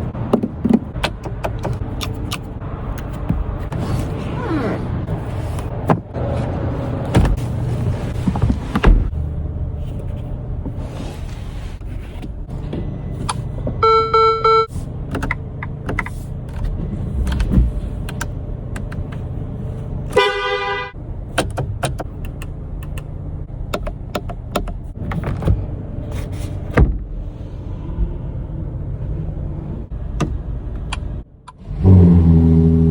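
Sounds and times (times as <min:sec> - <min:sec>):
car horn honks: 0:20.1 - 0:21.0.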